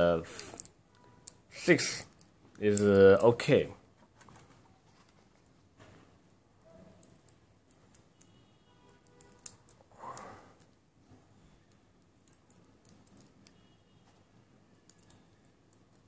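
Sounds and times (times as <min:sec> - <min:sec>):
small metal clicks: 0:00.3 - 0:01.4, 0:06.3 - 0:10.8, 0:11.6 - 0:13.6, 0:14.8 - 0:16.0.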